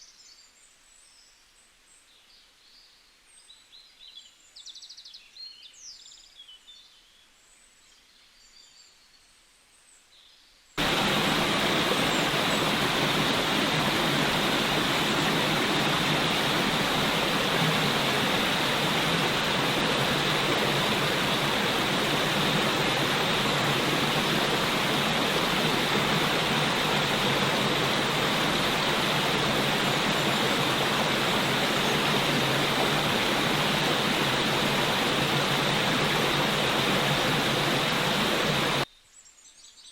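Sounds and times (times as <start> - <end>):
faint birdsong: 0.0 - 39.9
loud steady rushing noise: 10.8 - 38.8.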